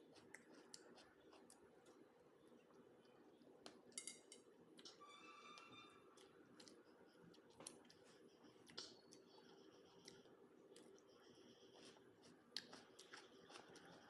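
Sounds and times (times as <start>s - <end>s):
wet mouth chewing sounds: 0.0s - 2.0s, 6.2s - 11.1s, 11.8s - 14.0s
faint steady hum: 0.0s - 14.0s.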